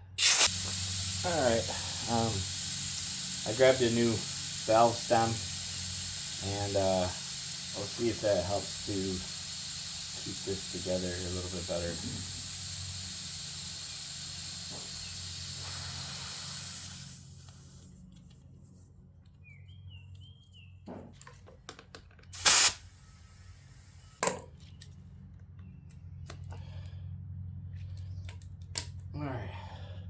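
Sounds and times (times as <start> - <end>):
compressed air hissing at valve: 0.0 - 17.9, 22.4 - 24.2
short loud air bursts: 0.0 - 17.9, 22.4 - 24.2.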